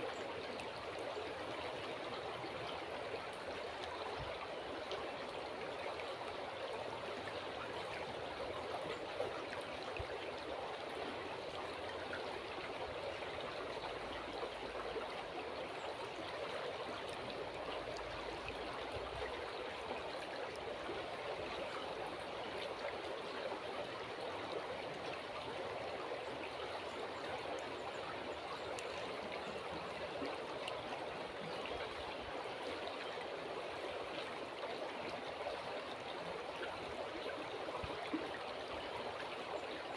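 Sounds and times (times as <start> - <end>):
river water babbling: 0.0 - 39.9.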